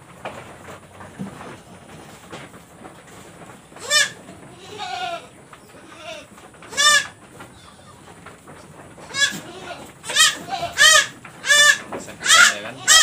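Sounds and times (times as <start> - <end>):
goat bleating cries: 3.8 - 8.1, 9.0 - 13.0.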